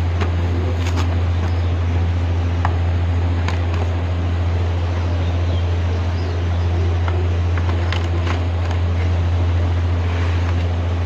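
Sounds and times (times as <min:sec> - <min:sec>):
constant hiss: 0:00.0 - 0:11.0
steady low hum: 0:00.0 - 0:11.0.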